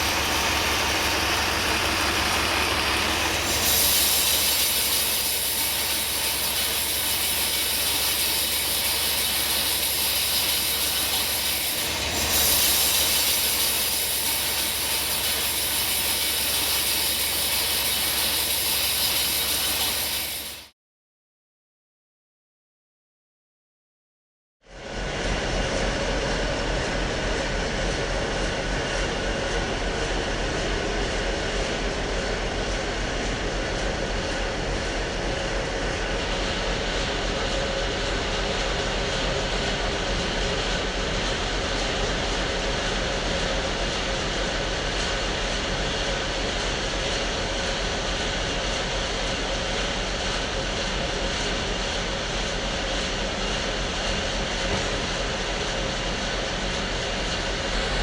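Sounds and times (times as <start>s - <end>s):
sawmill saw running: 0.0s - 20.7s, 28.4s - 58.0s.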